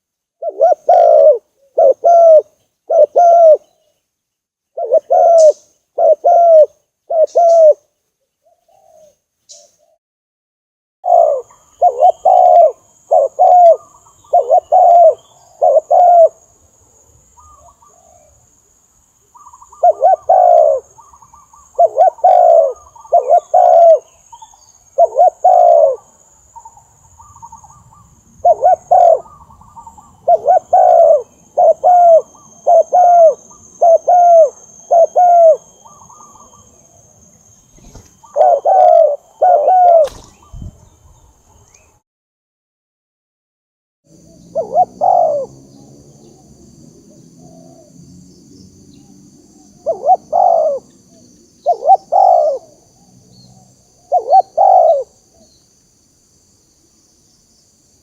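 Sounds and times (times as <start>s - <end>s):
dove cooing: 0.4s - 3.8s, 4.8s - 9.2s, 11.0s - 16.4s, 19.4s - 36.9s, 37.7s - 40.9s, 44.2s - 46.6s, 47.3s - 48.0s, 49.0s - 55.5s.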